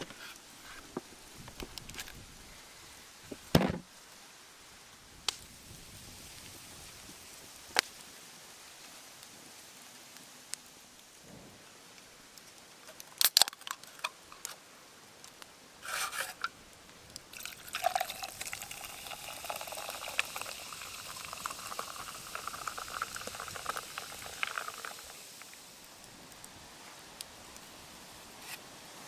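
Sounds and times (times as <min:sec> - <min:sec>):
campfire hissing and crackling: 0:00.0 - 0:29.0
liquid pouring into container: 0:17.3 - 0:25.4.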